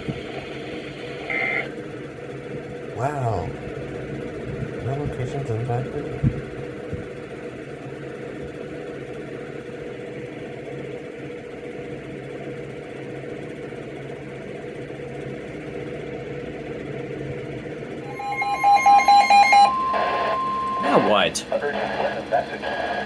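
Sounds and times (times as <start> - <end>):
electronic alert tone: 18.0 - 23.0.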